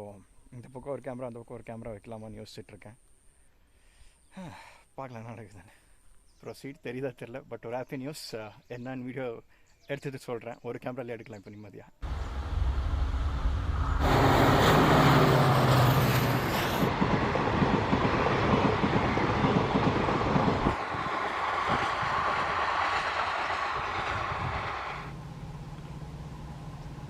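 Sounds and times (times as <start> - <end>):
train rushing past: 12.0 - 26.9.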